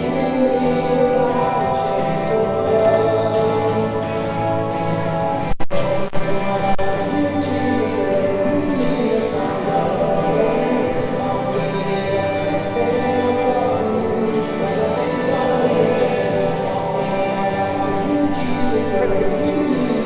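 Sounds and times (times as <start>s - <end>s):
worship song singing: 0.0s - 20.0s.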